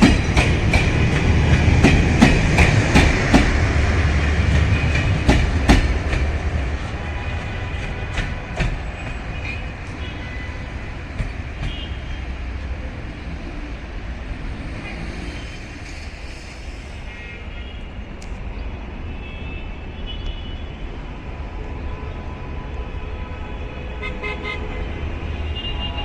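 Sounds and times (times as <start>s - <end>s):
train clanks: 0.0s - 17.1s
train rumbling: 0.0s - 19.1s.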